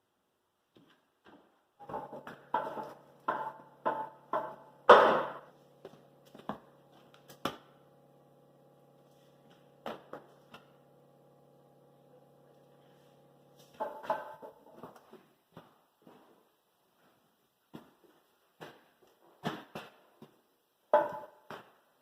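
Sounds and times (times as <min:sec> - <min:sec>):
faint steady hum: 0:00.0 - 0:22.0
sharp knocks: 0:01.8 - 0:05.5.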